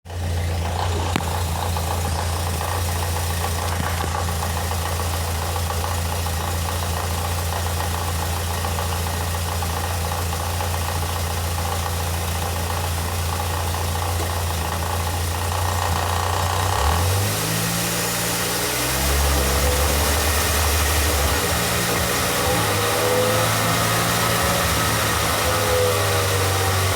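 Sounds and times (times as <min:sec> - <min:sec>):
wheel noise drone: 0:00.0 - 0:07.3, 0:13.3 - 0:26.9
car engine: 0:00.0 - 0:26.9.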